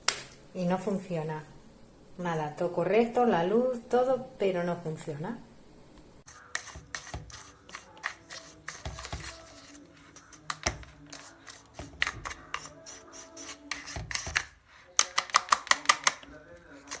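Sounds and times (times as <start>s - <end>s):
plastic clicks of coffee grinder: 14.1s - 16.3s.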